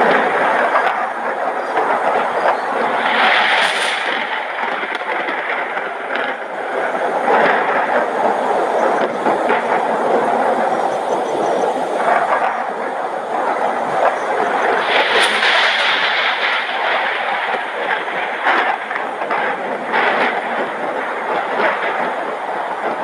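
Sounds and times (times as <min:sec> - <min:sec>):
thunderstorm roar: 0:00.0 - 0:23.0.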